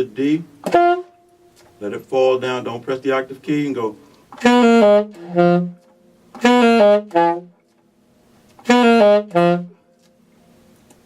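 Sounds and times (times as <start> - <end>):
alto saxophone phrase: 0.0 - 7.6, 8.6 - 9.9.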